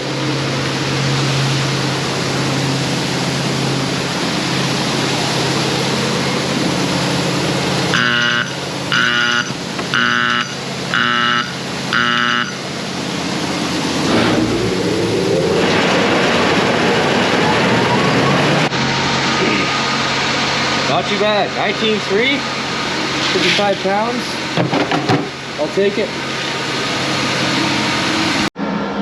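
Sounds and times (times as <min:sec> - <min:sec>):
grain dryer fan noise: 0:00.0 - 0:29.0
motor whine spinning up: 0:00.1 - 0:21.0
warning buzzer beeping: 0:07.9 - 0:12.8.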